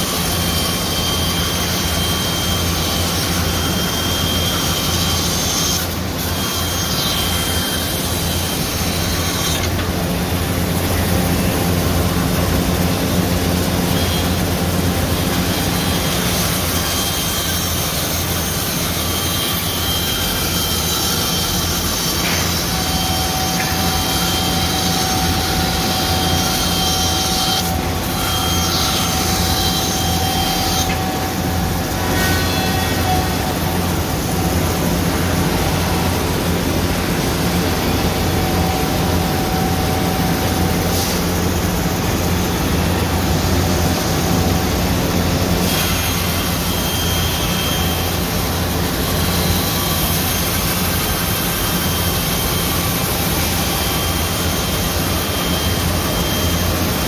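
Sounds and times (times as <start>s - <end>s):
band saw cutting wood: 0.0s - 57.0s
mid-pitched machine tone: 22.5s - 48.5s.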